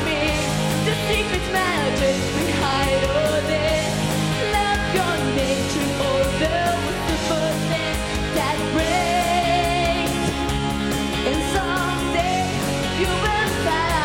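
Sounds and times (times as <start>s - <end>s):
pop backing track: 0.0s - 14.0s
girl singing: 4.4s - 10.4s, 11.3s - 14.0s.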